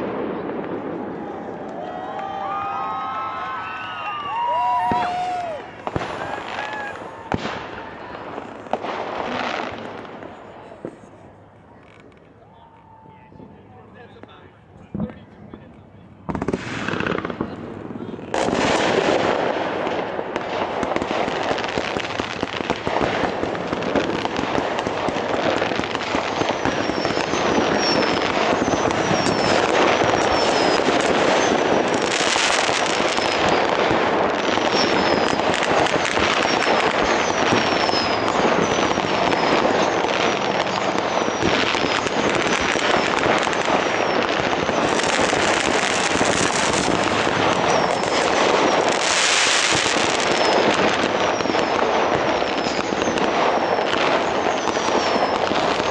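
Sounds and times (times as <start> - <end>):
fireworks crackling: 0.0 - 55.9
fireworks hissing: 2.9 - 12.2, 16.3 - 55.9
falling whistles: 36.4 - 40.1.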